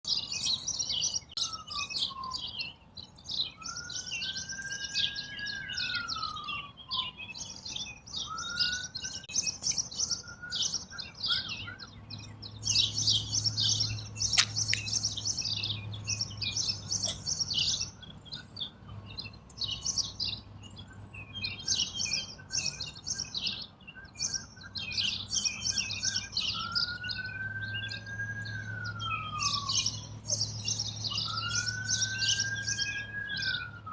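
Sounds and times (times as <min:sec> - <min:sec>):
songbirds chirping: 0:00.0 - 0:33.9
rising and falling whistle: 0:01.4 - 0:02.6, 0:03.4 - 0:09.3, 0:25.4 - 0:33.9.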